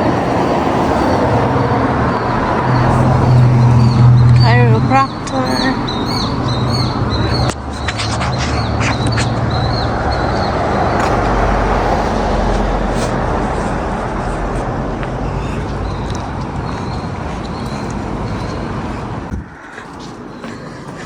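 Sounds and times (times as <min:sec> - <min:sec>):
car passing: 0:00.0 - 0:21.0
small birds chirping: 0:02.0 - 0:11.3, 0:13.6 - 0:21.0.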